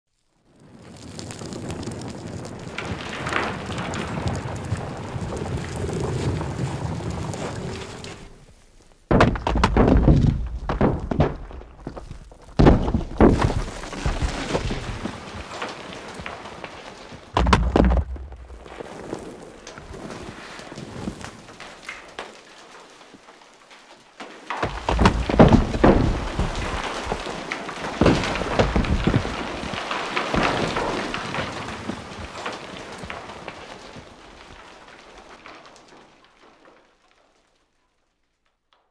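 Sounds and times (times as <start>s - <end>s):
rocks tumbling and crashing: 0.1s - 38.9s
small stones trickling: 0.4s - 37.4s
heavy low thuds: 17.4s - 18.8s.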